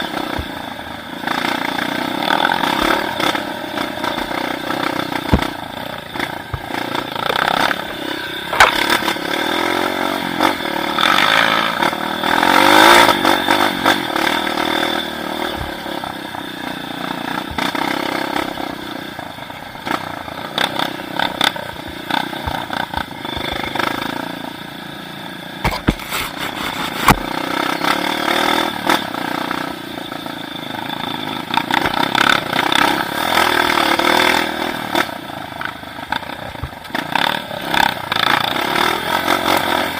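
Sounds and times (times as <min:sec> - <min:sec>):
motor engine revving: 0:00.0 - 0:24.5, 0:36.5 - 0:39.9.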